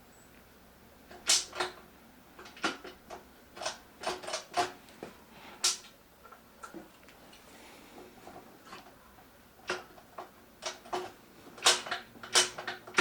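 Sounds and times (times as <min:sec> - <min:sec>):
sharp clicks and light knocks: 0:01.1 - 0:01.8, 0:02.4 - 0:07.2, 0:08.3 - 0:13.0.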